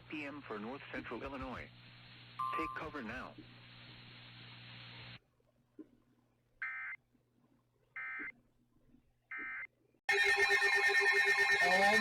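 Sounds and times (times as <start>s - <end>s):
harsh electronic alert sound: 10.1s - 12.0s.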